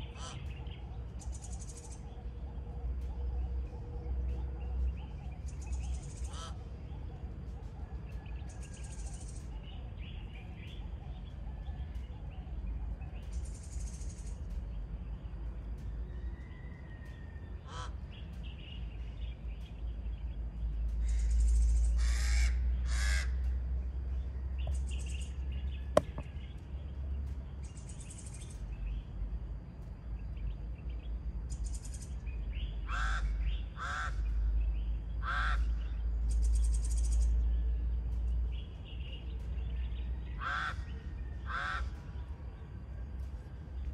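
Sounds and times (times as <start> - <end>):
harsh cawing bird calls: 0.0 - 2.5, 5.6 - 7.2, 16.4 - 18.7, 21.0 - 23.7, 32.6 - 37.3, 40.2 - 42.3
steady low rumble: 0.0 - 43.9.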